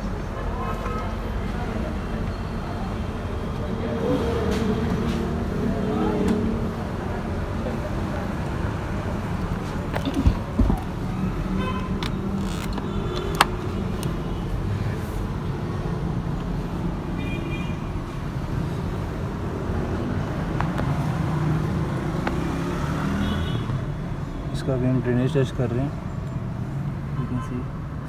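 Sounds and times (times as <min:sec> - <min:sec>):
traffic rumble: 0:00.0 - 0:28.0.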